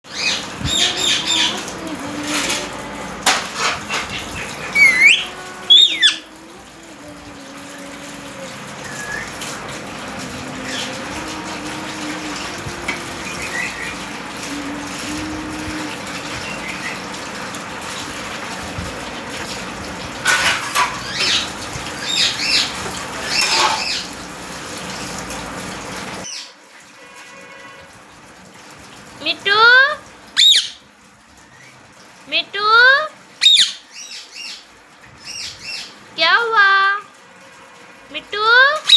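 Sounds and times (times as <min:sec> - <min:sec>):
parrot chirping and squawking: 0:00.1 - 0:06.4, 0:12.0 - 0:15.0, 0:20.3 - 0:24.2, 0:26.2 - 0:26.6, 0:30.4 - 0:30.9, 0:33.4 - 0:37.0.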